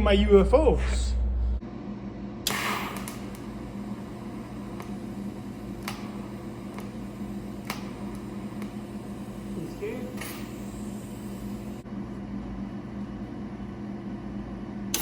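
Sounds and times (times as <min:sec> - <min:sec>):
steady low hum: 0:00.0 - 0:15.0
welding arc hissing: 0:02.5 - 0:11.8.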